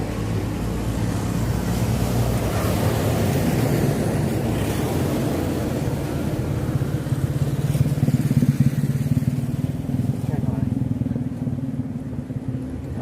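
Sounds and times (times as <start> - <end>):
small motorcycle engine running: 7.2 - 12.8.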